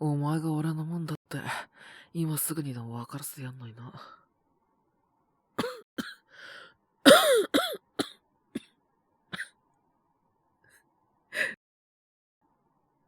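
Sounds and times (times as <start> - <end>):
person coughing: 5.6 - 6.2, 7.1 - 8.7.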